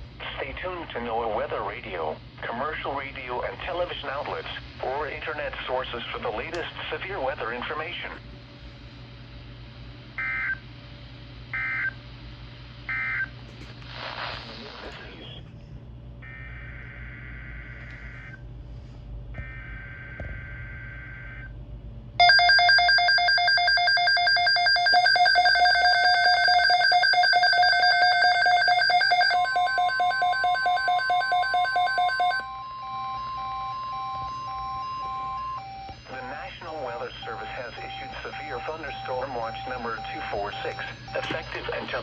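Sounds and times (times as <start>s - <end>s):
rapidly pulsing multi-tone alert: 22.2s - 42.0s
buzzing digital data tones: 32.4s - 42.0s.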